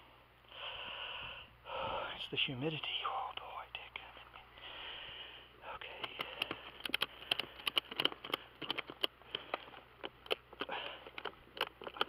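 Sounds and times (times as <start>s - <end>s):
ratchet strap clicking: 5.9s - 12.0s.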